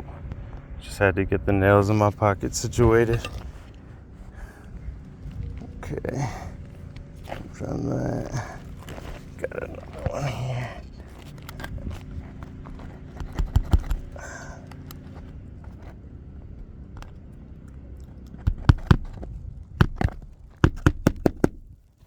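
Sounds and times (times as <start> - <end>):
hammer driving nails: 18.4 - 19.2, 19.8 - 21.7.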